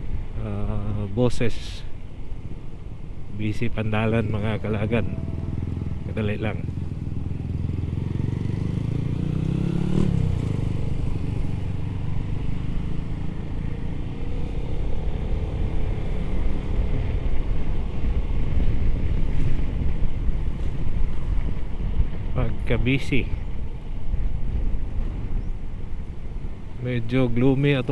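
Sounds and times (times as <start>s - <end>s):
road and wind rumble: 0.0s - 27.9s
motorcycle engine accelerating: 3.9s - 22.3s.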